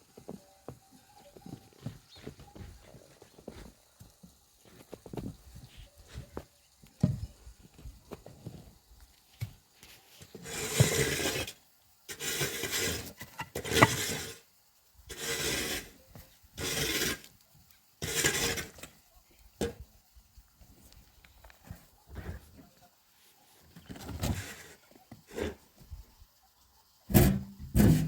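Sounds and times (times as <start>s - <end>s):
rasping scraping strokes: 10.4s - 14.4s, 15.1s - 16.0s, 16.6s - 17.3s.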